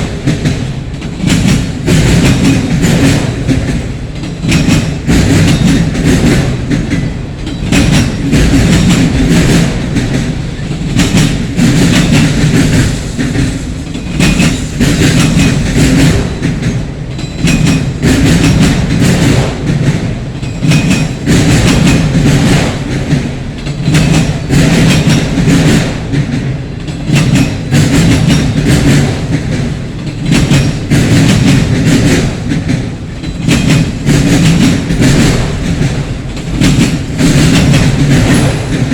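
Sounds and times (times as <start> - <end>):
low train rumble: 0.0 - 38.9
train wheels clicking over rail joints: 0.0 - 38.9.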